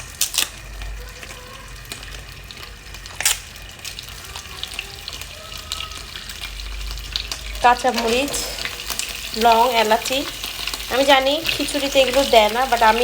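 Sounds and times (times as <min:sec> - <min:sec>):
ghee sizzling in a pot: 0:00.0 - 0:13.0.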